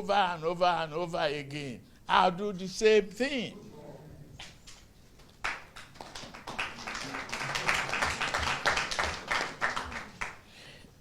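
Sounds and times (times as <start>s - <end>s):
audience clapping: 5.2s - 10.6s.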